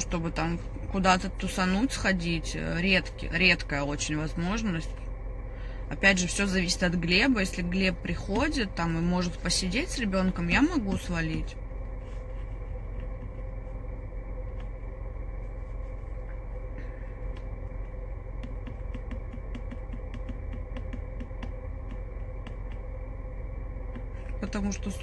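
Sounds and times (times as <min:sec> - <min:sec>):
steady low hum: 0:00.0 - 0:25.0
fingers tapping a touchscreen: 0:18.4 - 0:22.8.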